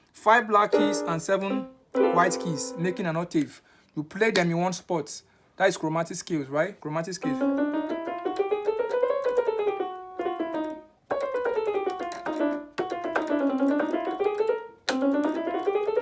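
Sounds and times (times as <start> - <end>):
keyboard playing chromatic scales: 0.7 - 3.3, 7.2 - 16.0.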